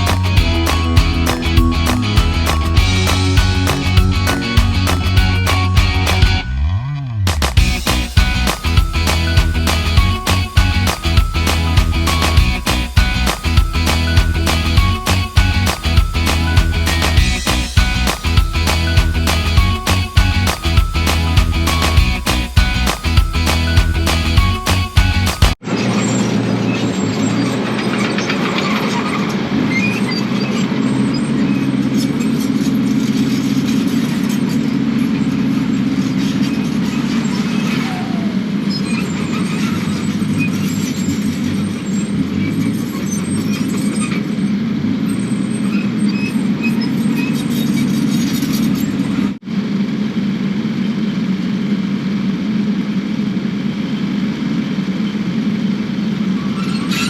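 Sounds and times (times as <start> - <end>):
excavator diesel engine running: 0.0 - 56.9
metallic squeaks and clinks: 7.6 - 49.4, 56.4 - 57.0.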